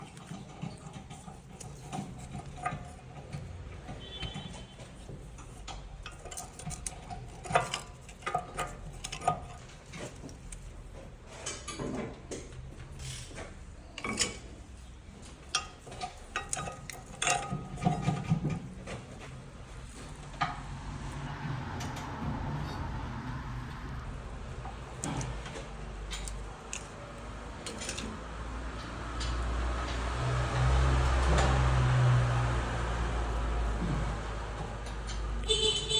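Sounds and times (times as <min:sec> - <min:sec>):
car brakes clicking and rattling: 0:00.0 - 0:35.9
low steady rumble: 0:19.6 - 0:25.3.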